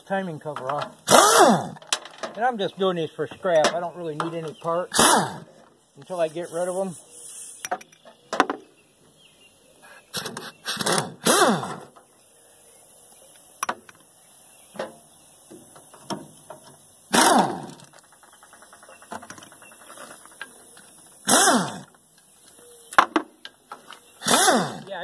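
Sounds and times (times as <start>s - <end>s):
ratchet clicking: 17.1s - 21.9s, 24.2s - 24.8s.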